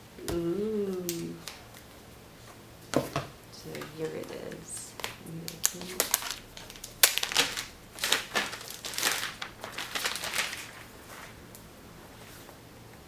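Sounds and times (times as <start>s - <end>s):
packaging crinkling: 3.7s - 11.6s.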